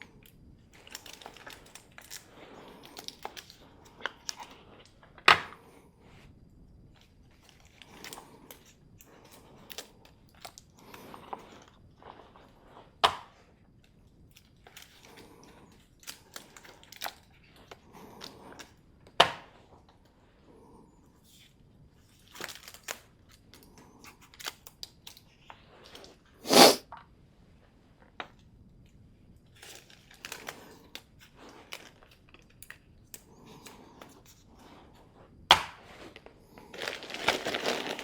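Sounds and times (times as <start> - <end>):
material rustling and crinkling: 35.8 - 38.0.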